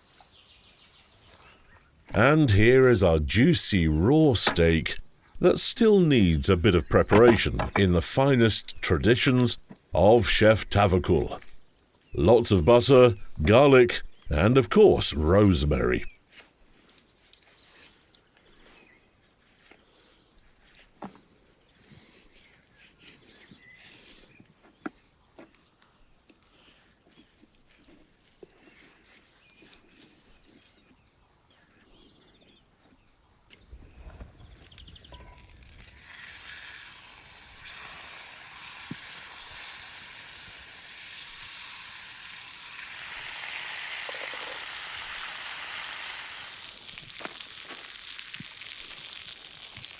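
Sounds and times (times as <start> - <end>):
steak sizzling in a pan: 35.2 - 49.9.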